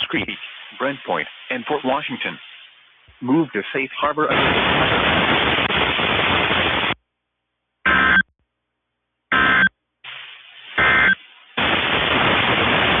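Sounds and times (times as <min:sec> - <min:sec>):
loud radio static: 0:00.0 - 0:02.5, 0:03.2 - 0:05.2, 0:07.9 - 0:08.2, 0:09.3 - 0:09.7, 0:10.8 - 0:13.0
digital data tone bursts: 0:07.9 - 0:08.3, 0:09.3 - 0:09.7, 0:10.8 - 0:11.2.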